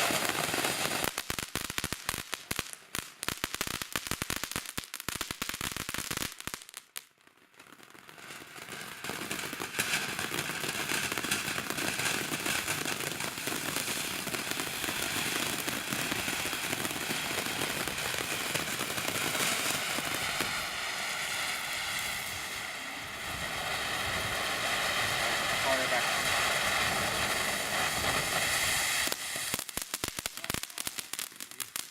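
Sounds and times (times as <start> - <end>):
firework hissing spray: 0.0 - 1.3, 9.4 - 31.9
firework crackling pops: 0.0 - 31.9.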